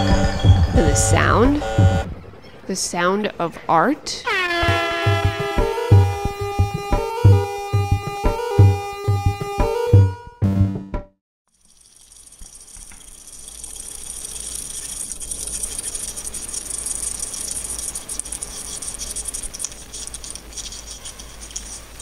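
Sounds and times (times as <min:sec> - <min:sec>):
low steady hum: 0:00.0 - 0:04.3
dense fluttering crackle: 0:11.5 - 0:22.0.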